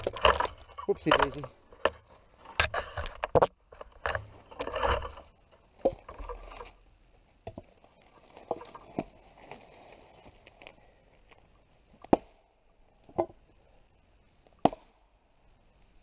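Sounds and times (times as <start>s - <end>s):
wood scraping and rattling: 0.0s - 6.8s, 8.1s - 9.4s
axe splitting firewood: 12.1s - 12.4s, 14.6s - 14.9s.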